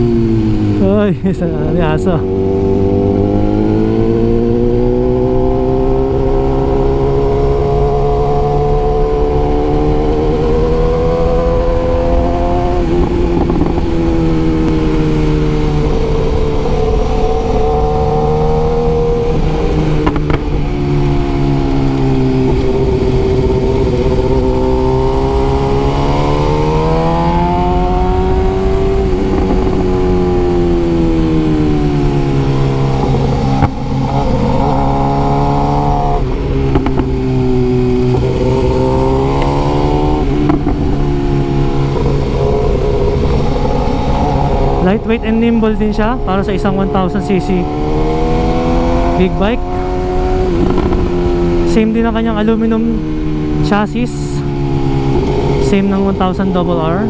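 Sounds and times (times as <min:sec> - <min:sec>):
motorcycle engine cruising: 0:00.0 - 0:57.0.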